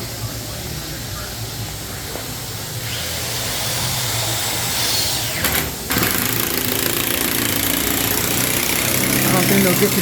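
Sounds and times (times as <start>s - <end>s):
power tool motor running: 2.8s - 10.0s.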